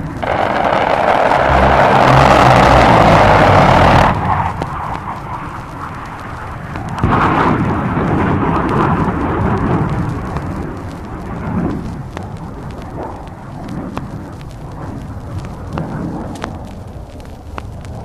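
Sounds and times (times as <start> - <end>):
aircraft rushing roar: 0.2 - 6.1
explosion blast rumbling: 0.2 - 6.2, 6.8 - 11.9.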